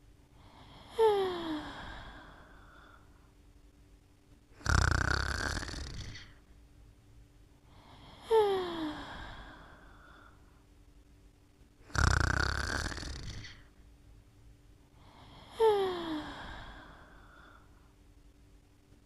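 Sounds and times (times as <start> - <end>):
person snoring: 0.4 - 3.0, 4.6 - 6.4, 7.7 - 10.4, 11.8 - 13.7, 15.0 - 17.7.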